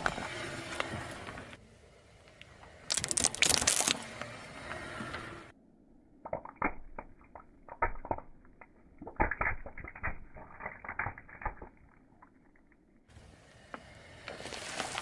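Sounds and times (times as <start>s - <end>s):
brittle crackling under a car tyre: 2.4s - 4.4s, 6.2s - 13.0s, 14.2s - 15.0s.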